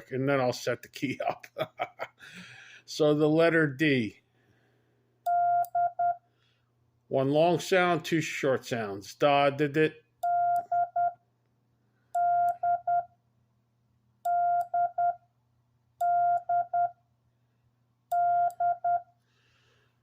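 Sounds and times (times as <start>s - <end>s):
morse code beeps: 5.3s - 6.2s, 10.2s - 11.2s, 12.2s - 13.1s, 14.3s - 15.2s, 16.0s - 17.0s, 18.1s - 19.1s.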